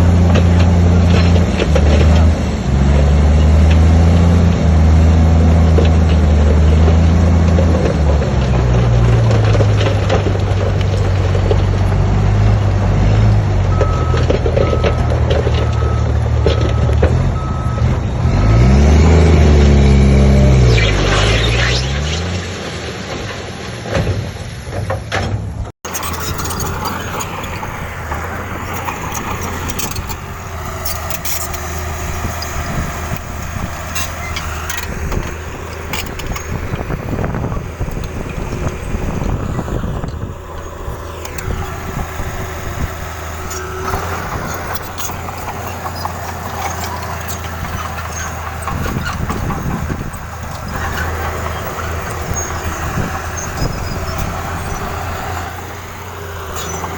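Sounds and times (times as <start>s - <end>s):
diesel machinery engine drone: 0.0s - 25.0s, 25.6s - 56.9s
metal clanks and knocks: 23.9s - 56.9s.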